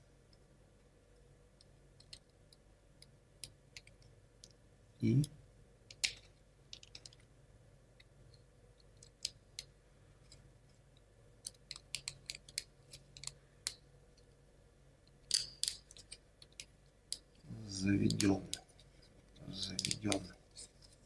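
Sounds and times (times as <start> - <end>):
plywood parts clicking: 11.4 - 13.8, 15.2 - 17.3, 19.6 - 20.8.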